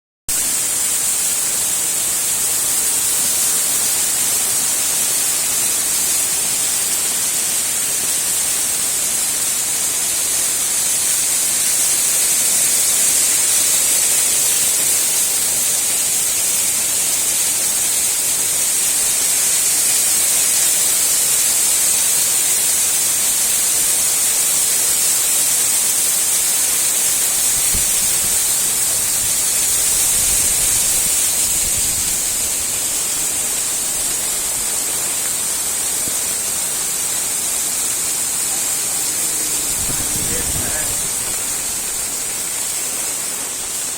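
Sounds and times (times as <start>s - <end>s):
waterfall rushing: 26.6s - 43.9s.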